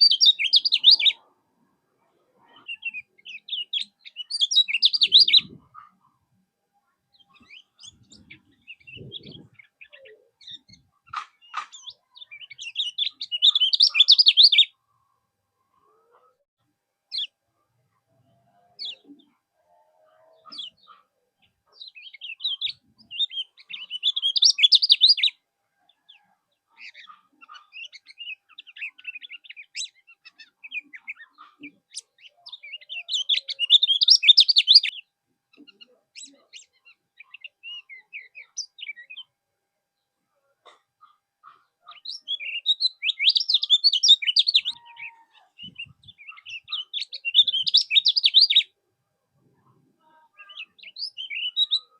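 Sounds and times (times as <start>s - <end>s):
songbird twittering song: 0.0s - 1.3s, 2.4s - 15.2s, 20.0s - 39.4s, 41.0s - 48.8s, 49.6s - 51.9s
short bird chirps: 50.4s - 51.9s.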